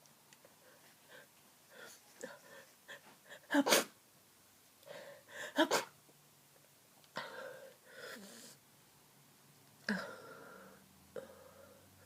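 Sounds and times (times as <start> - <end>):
person sneezing: 3.5 - 4.0, 5.6 - 6.0.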